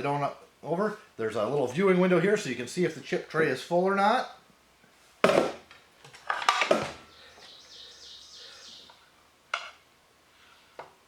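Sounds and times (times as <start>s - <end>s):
bird trilling: 7.1s - 9.0s.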